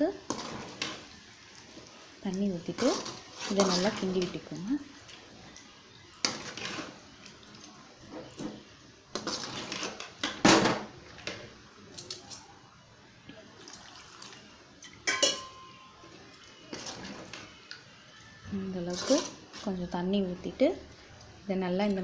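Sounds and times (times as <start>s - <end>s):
spoon stirring in curry: 2.7s - 10.2s, 16.2s - 19.8s.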